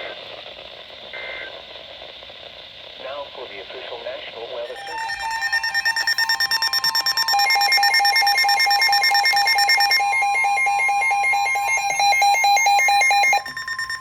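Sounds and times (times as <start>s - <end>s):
pulsed alternating beeps: 4.7s - 14.0s
steady electronic alert tone: 4.7s - 14.0s.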